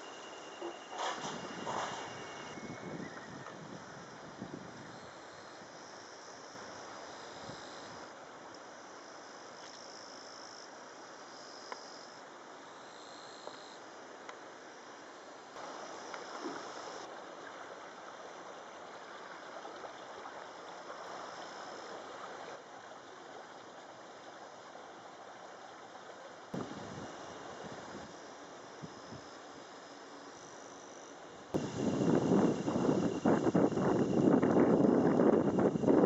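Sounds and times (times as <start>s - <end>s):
insects trilling: 0.0s - 17.1s, 20.6s - 22.5s, 26.6s - 36.0s
steady rushing noise: 31.6s - 36.0s.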